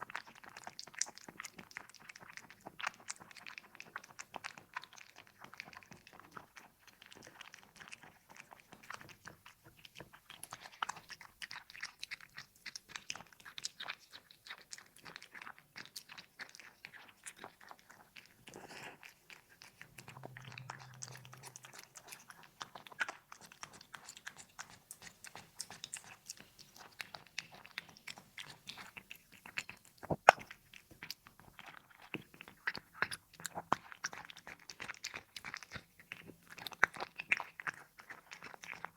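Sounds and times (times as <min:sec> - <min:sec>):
cat chewing and crunching: 0:00.0 - 0:38.9.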